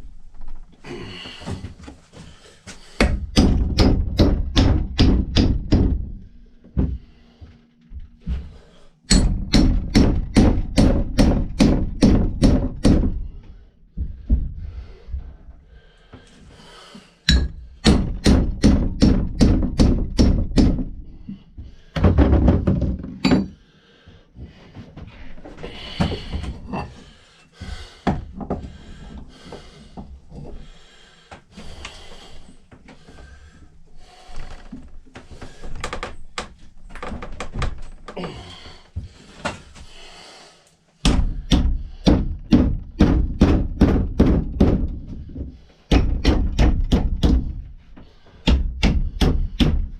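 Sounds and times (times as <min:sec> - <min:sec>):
hammer striking chisel: 0:03.0 - 0:06.1, 0:09.1 - 0:13.2, 0:17.3 - 0:20.9, 0:23.2 - 0:23.6, 0:41.0 - 0:44.8, 0:45.9 - 0:47.5, 0:48.4 - 0:49.9.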